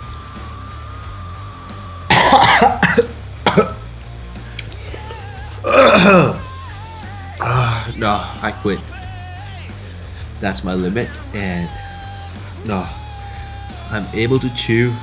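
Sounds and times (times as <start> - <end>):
background music: 0.0 - 15.0
man coughing and gagging: 2.1 - 3.8, 4.6 - 6.5, 7.4 - 8.4.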